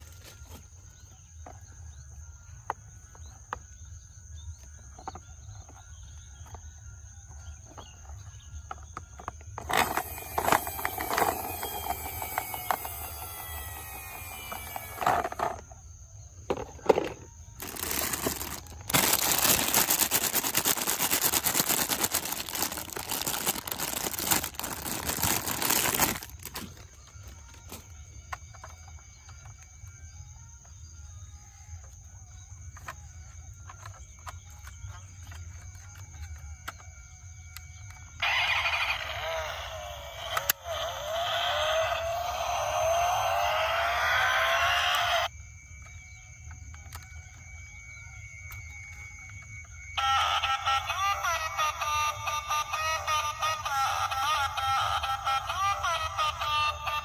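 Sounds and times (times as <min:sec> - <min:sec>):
toy car whirring: 0:04.6 - 0:15.8, 0:16.5 - 0:29.9, 0:32.8 - 0:45.3, 0:48.4 - 0:57.0
plastic toy cars clicking: 0:07.6 - 0:15.7, 0:16.5 - 0:29.9, 0:32.8 - 0:45.3.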